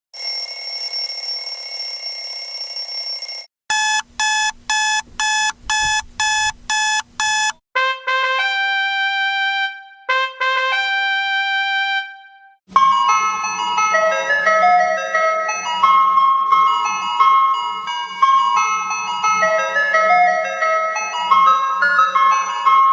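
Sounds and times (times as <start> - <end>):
electronic alarm tone: 2.8 - 7.6
quick alarm beeps: 3.7 - 7.6.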